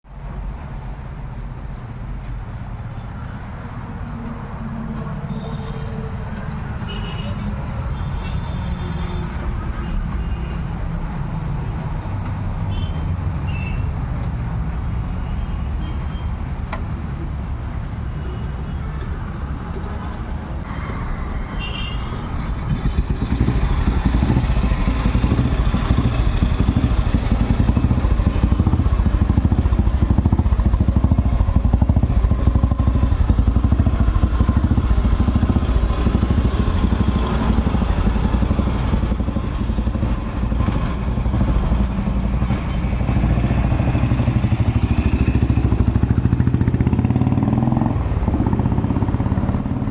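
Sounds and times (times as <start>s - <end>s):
motorcycle engine running: 22.5s - 49.9s.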